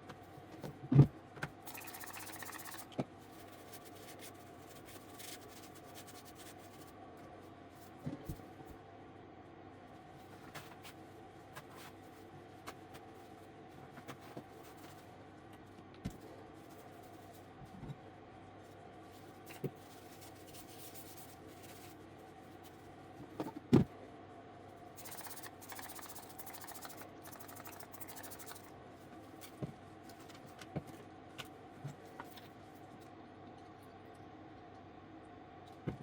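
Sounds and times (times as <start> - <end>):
machine hum: 1.6 - 3.0, 23.7 - 29.3.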